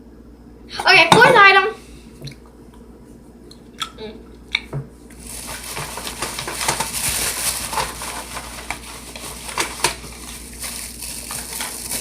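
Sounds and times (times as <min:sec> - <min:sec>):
hand rummaging through bag: 0:05.2 - 0:12.0.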